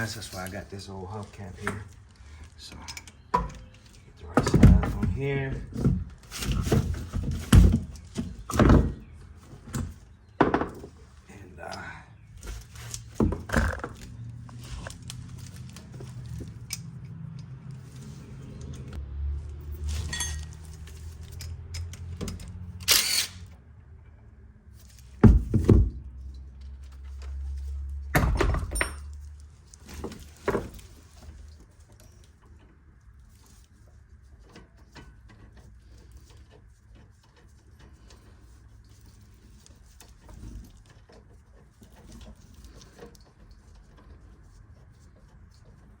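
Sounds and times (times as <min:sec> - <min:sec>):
metal tools and parts clanking: 0:19.7 - 0:23.4, 0:28.2 - 0:32.6.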